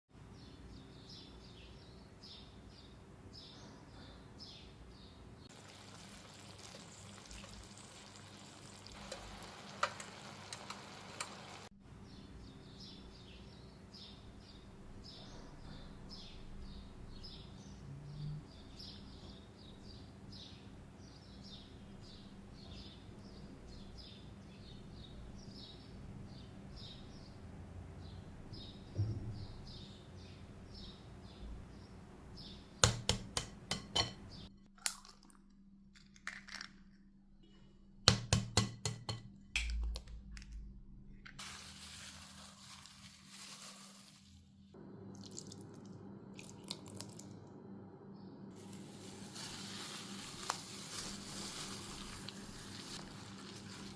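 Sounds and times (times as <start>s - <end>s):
food sizzling in a pan: 5.5s - 11.7s, 41.4s - 44.4s, 48.6s - 53.9s.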